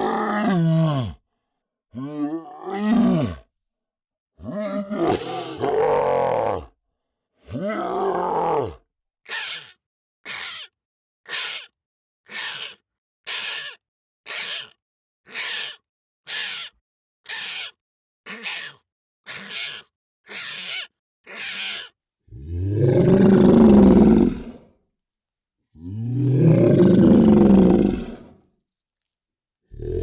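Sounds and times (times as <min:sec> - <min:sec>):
monster low growling roar: 0:00.0 - 0:01.2, 0:02.0 - 0:03.5, 0:04.4 - 0:06.7, 0:07.5 - 0:08.8, 0:22.3 - 0:24.6, 0:25.8 - 0:28.3, 0:29.7 - 0:30.0
monster raspy breaths: 0:00.0 - 0:01.2, 0:02.0 - 0:03.5, 0:04.4 - 0:06.7, 0:22.4 - 0:24.6, 0:25.8 - 0:28.3, 0:29.7 - 0:30.0.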